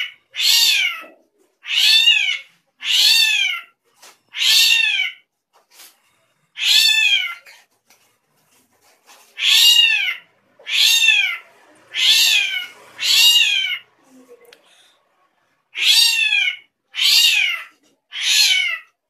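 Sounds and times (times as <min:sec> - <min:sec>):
bird meowing call: 0:09.4 - 0:13.9, 0:15.8 - 0:18.9.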